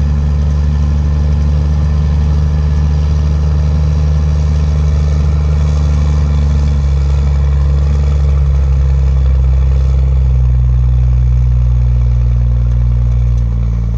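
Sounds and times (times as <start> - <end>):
diesel engine running: 0.0 - 13.9.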